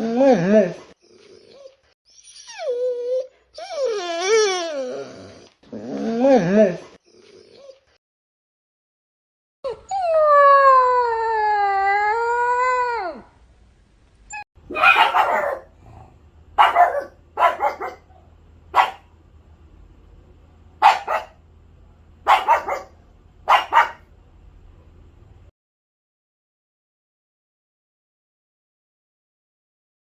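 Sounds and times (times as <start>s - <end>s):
dog barking: 14.7s - 16.0s, 16.6s - 19.1s, 20.8s - 21.4s, 22.2s - 24.1s.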